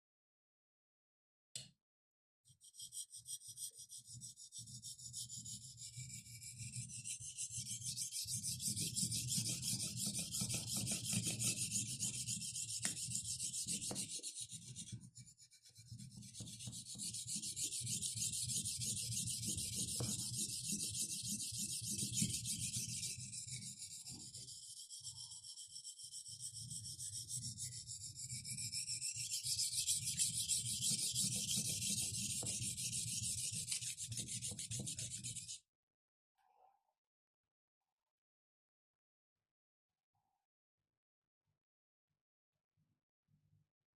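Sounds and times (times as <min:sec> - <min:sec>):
knife rasping on whetstone: 0:02.7 - 0:35.6.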